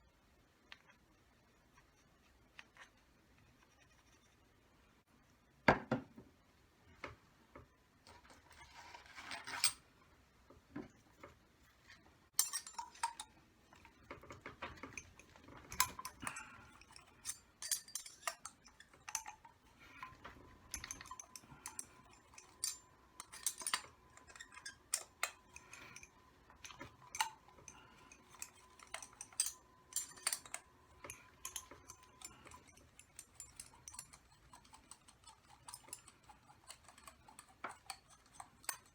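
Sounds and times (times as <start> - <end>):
small metal parts clinking: 12.4 - 13.8, 14.6 - 38.9.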